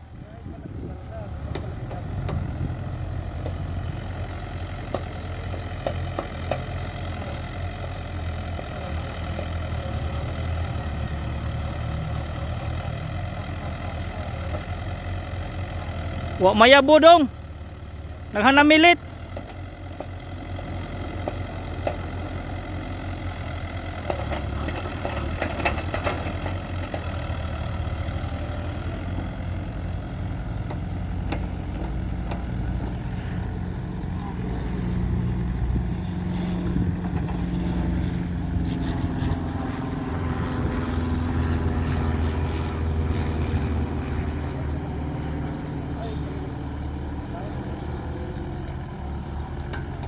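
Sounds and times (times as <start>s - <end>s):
excavator diesel engine running: 0.0s - 50.0s.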